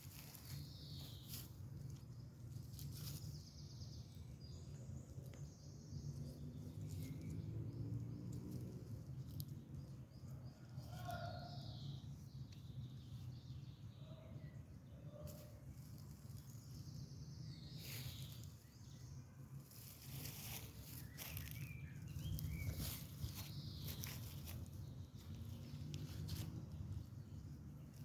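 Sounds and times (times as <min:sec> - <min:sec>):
bird chirps: 0:20.2 - 0:26.4.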